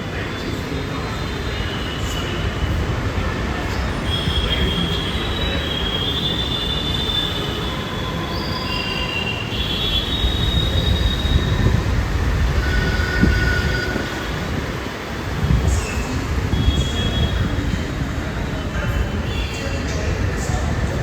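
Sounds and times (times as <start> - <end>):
train wheels squealing: 0.2 - 14.9, 15.6 - 20.1
train low rumble: 10.0 - 21.0.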